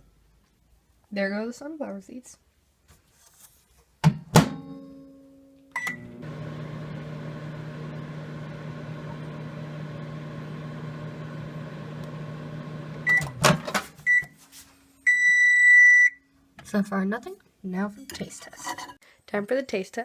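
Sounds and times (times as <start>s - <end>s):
microwave oven humming: 5.8s - 13.6s.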